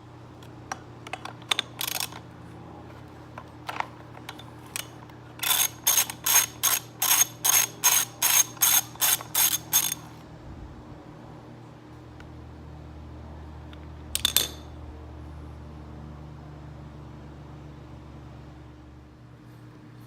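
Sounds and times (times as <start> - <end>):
socket ratchet clicking: 1.1 - 2.2, 4.4 - 10.1, 14.2 - 14.7.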